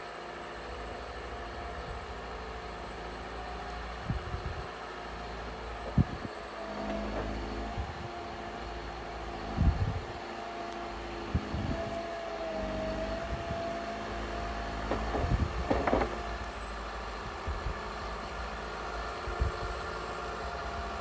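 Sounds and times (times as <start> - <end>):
steady whine: 0.0 - 21.0
vehicle engine running: 0.0 - 21.0
knocks and rattles: 14.8 - 16.6.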